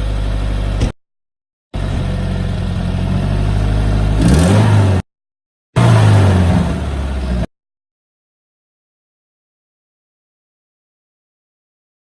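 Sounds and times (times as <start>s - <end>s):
car engine revving: 1.8s - 5.0s, 5.8s - 7.5s.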